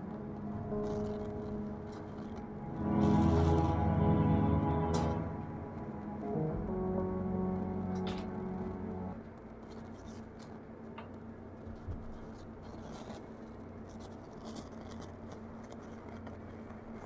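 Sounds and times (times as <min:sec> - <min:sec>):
low speaker hum: 0:00.0 - 0:09.8.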